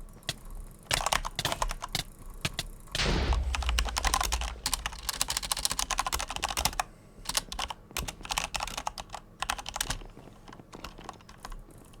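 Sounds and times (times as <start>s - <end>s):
clicker toy handles clacking: 0.2s - 2.7s.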